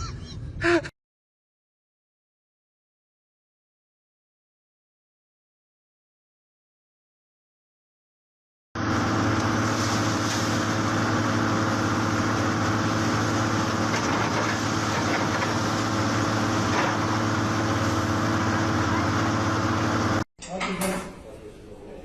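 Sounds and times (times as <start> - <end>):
motor running with low hum: 8.8 - 20.2.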